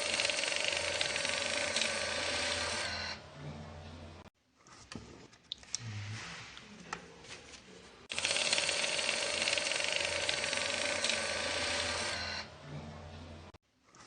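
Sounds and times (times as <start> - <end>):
money counter whirring rattle: 0.0 - 3.0, 8.1 - 12.5.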